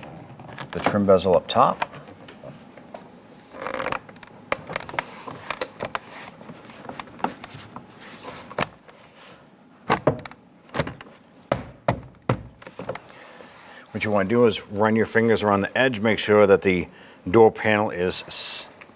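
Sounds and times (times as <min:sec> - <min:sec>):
plastic panel knocks: 0:10.8 - 0:12.6.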